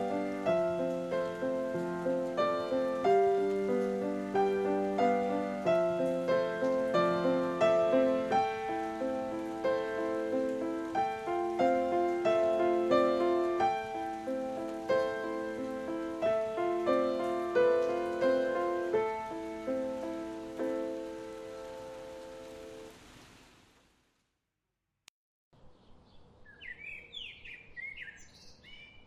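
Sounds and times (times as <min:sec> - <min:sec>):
slow gentle piano music: 0:00.0 - 0:23.0.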